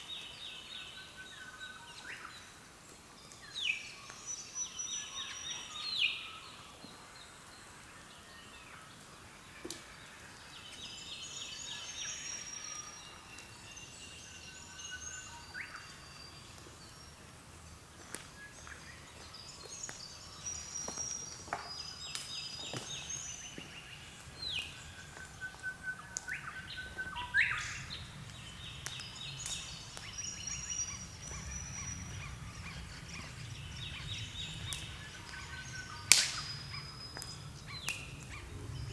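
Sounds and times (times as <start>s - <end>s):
birds calling: 18.0s - 38.9s
faint low rumble: 36.6s - 38.9s.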